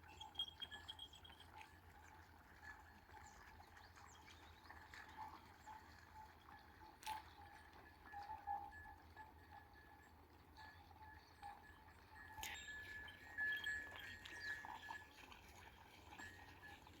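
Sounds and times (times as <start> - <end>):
small bells ringing: 0.0 - 1.9, 8.2 - 17.0.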